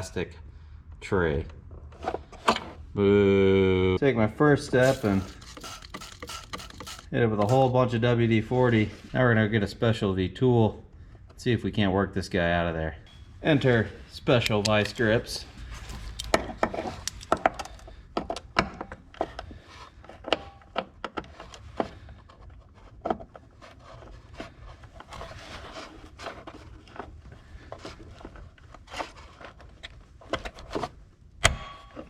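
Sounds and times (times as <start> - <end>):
locking pliers clicking on bolt: 14.4 - 15.0, 17.0 - 17.8.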